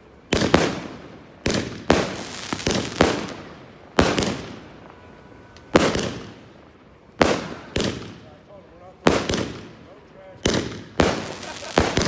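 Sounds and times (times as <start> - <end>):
firework bangs with rumble: 5.7 - 6.4, 9.0 - 9.8, 10.4 - 12.0.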